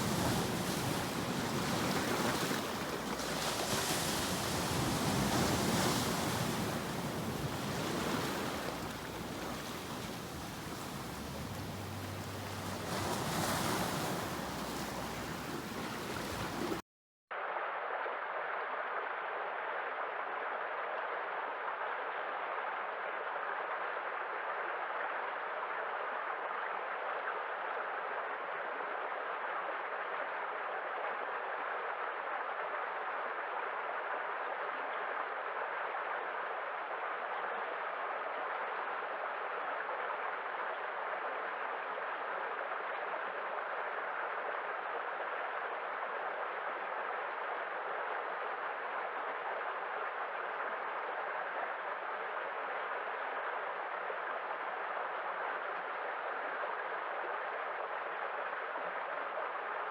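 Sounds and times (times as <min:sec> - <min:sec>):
sea waves breaking: 0:00.0 - 0:16.8
steady even hiss: 0:00.0 - 0:16.8.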